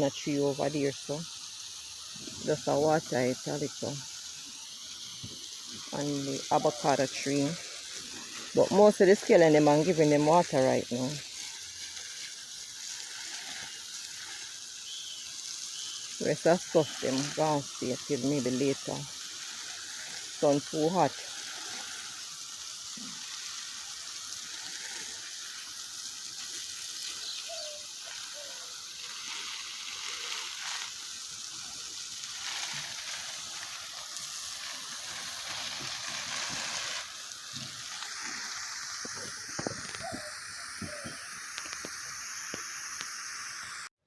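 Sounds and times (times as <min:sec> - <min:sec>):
water streaming onto plants: 0:00.0 - 0:43.9.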